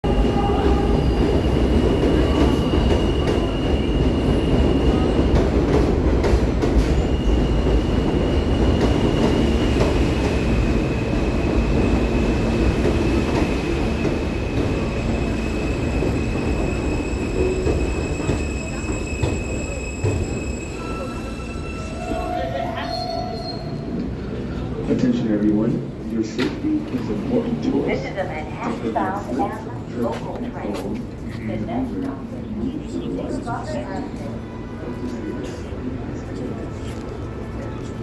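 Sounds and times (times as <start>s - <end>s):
train wheels rumbling on rail: 0.0s - 38.0s
high-pitched wheel squeal: 15.2s - 23.9s.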